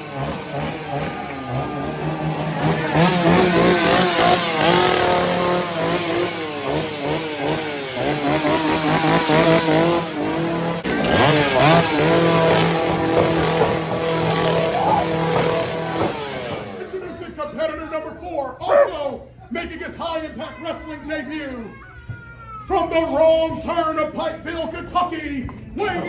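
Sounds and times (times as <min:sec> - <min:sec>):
chainsaw engine revving: 0:00.0 - 0:17.0.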